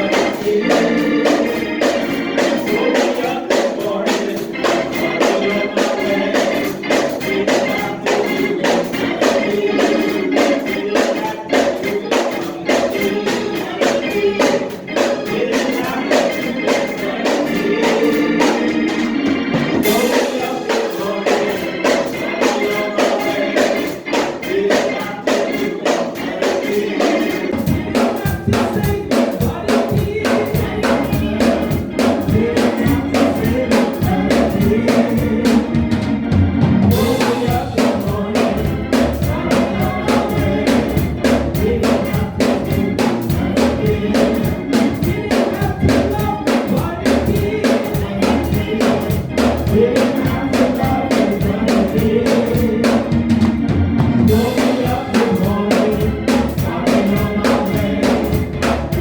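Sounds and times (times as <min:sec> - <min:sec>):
drum kit: 0:00.0 - 0:59.0
gospel band playing: 0:00.0 - 0:59.0
group singing: 0:00.0 - 0:59.0
bass: 0:29.9 - 0:59.0.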